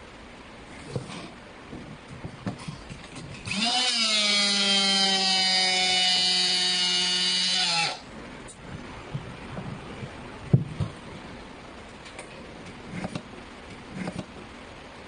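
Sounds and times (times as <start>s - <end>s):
rebar bender motor whine: 3.1s - 8.1s.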